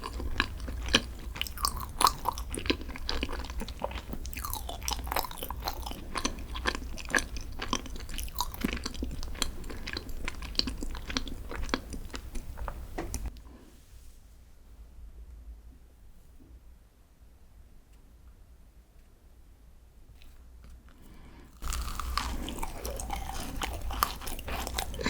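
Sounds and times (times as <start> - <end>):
close chewing mouth noises: 0.0 - 13.3, 21.6 - 25.0.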